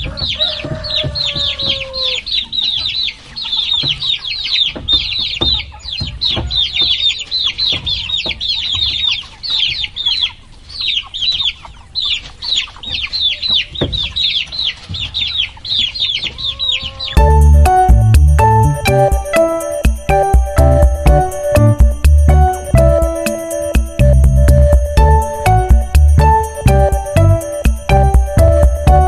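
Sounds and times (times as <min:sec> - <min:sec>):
chicks peeping: 0:00.0 - 0:29.0
music: 0:17.2 - 0:29.0.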